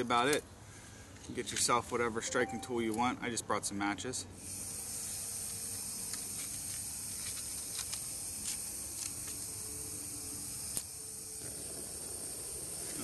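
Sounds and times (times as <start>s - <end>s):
gas stove hissing: 4.4s - 13.0s.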